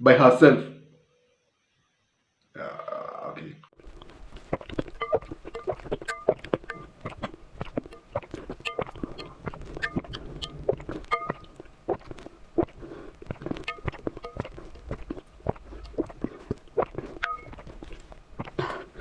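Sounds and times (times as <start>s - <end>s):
wet mouth clicks and smacks: 3.8s - 18.8s.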